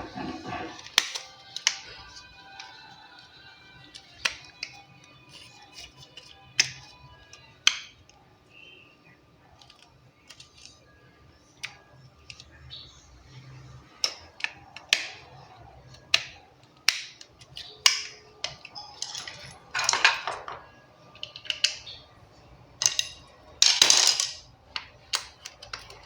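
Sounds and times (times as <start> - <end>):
scraping rattles: 0.0 - 0.8
small parts clicking and knocking: 0.8 - 8.2, 9.6 - 10.8, 13.9 - 22.1, 22.8 - 26.0.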